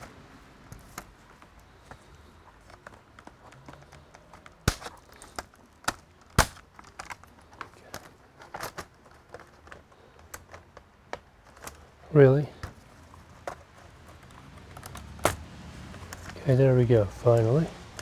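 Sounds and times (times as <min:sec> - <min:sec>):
plastic case clicks and knocks: 0:02.7 - 0:11.8.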